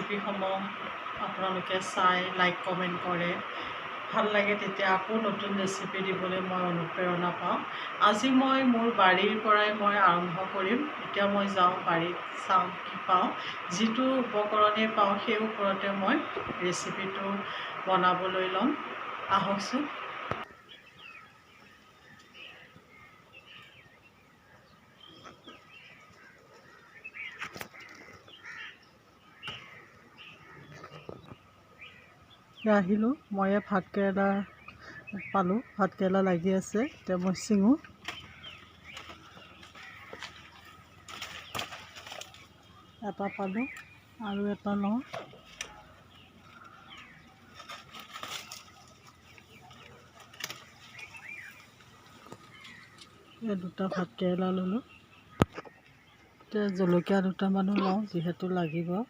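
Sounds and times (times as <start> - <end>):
birds chirping: 0.0 - 59.0
stems snapping: 27.4 - 28.1, 37.2 - 42.4, 46.6 - 53.2
leafy vines rustling: 33.6 - 58.2.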